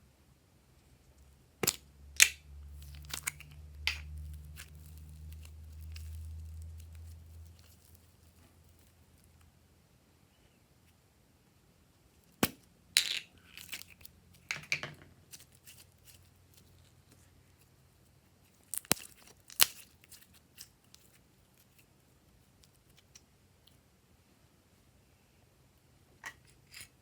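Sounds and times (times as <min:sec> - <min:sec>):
slime popping and crackling: 0:01.6 - 0:09.1, 0:18.6 - 0:21.0.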